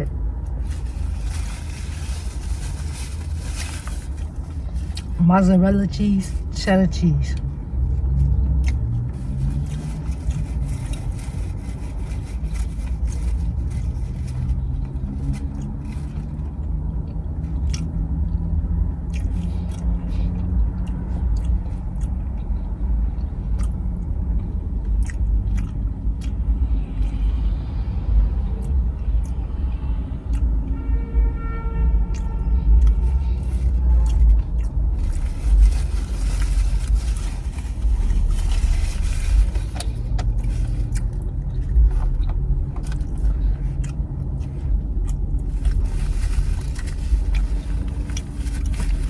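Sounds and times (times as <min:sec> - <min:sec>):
steady low rumble: 0:00.0 - 0:49.0
chewing and biting: 0:07.4 - 0:27.5, 0:32.1 - 0:49.0.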